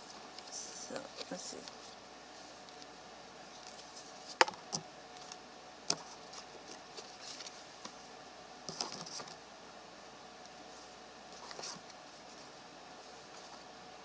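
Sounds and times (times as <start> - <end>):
cards rustling: 3.5 - 4.6, 5.2 - 8.0.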